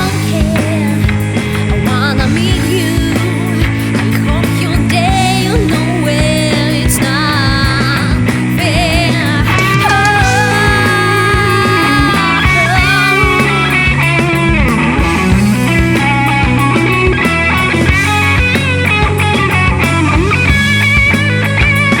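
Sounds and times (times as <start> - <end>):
lead guitar bending in pitch: 0.0 - 22.0
rock band playing: 0.0 - 22.0.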